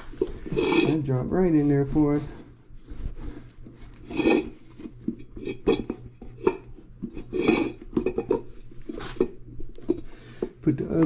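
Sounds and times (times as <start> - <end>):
metallic clanks and scraping: 0.0 - 1.2, 4.0 - 10.1.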